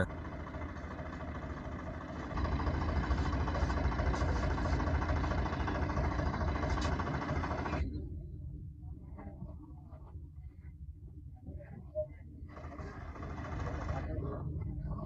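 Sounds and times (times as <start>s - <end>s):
engine running: 0.0s - 8.0s, 12.4s - 15.0s.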